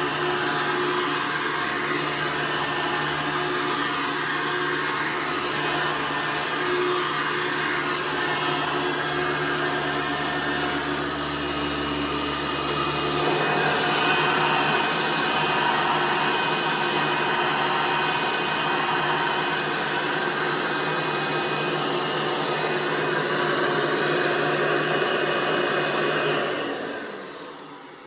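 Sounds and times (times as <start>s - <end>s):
vacuum cleaner running: 0.0s - 28.0s.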